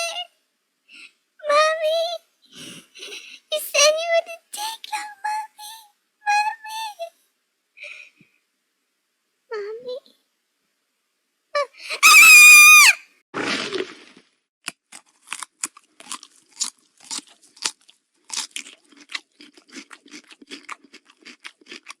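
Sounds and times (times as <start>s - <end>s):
high-pitched scream: 12.0s - 13.1s
creature crunching and chewing: 13.4s - 22.0s.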